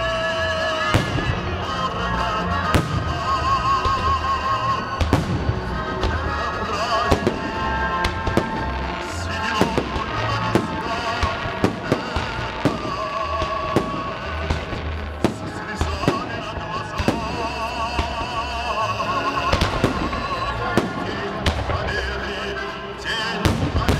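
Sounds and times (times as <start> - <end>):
festive music: 0.0 - 23.9.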